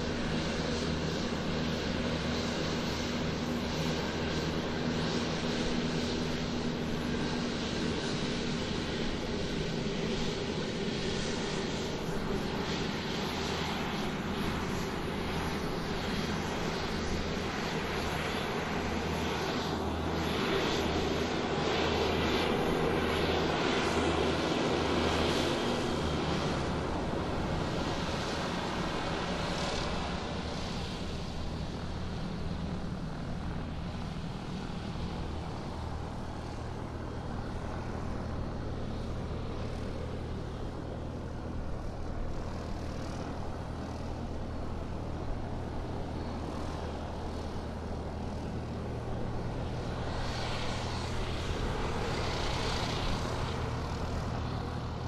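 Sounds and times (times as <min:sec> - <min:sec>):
airplane engine drone: 0:00.0 - 0:55.0.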